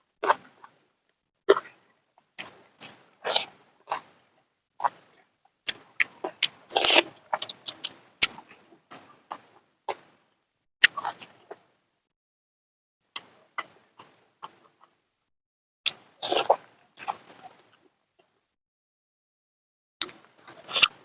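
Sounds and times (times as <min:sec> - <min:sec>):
crunchy chewing: 0:01.5 - 0:04.2, 0:04.8 - 0:10.2, 0:10.8 - 0:11.6, 0:20.0 - 0:21.0
chewing and mouth smacks: 0:02.4 - 0:04.1, 0:04.8 - 0:10.1.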